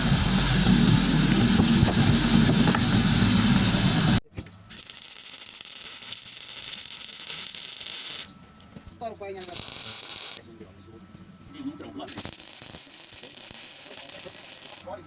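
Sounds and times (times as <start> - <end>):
low rumble: 0.0 - 4.2
sandblaster hiss: 0.0 - 8.3, 9.4 - 10.4, 12.1 - 15.0.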